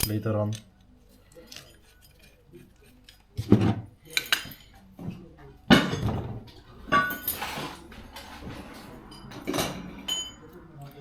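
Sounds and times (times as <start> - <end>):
metallic ring: 9.1 - 10.6.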